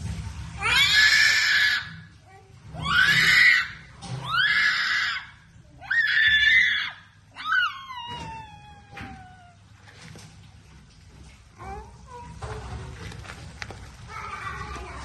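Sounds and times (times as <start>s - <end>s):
loud high-pitched cries: 0.6s - 2.1s, 2.8s - 9.6s.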